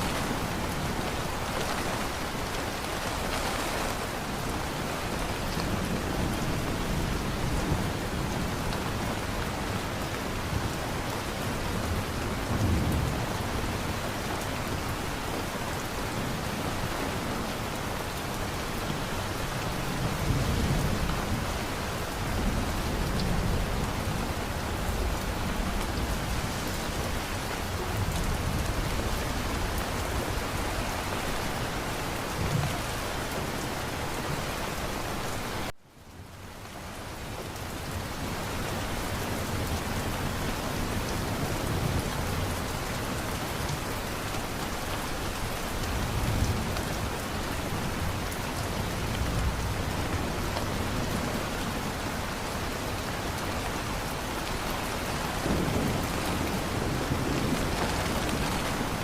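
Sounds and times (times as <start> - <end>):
heavy rain: 0.0 - 59.0
thunder rumbles: 54.8 - 59.0.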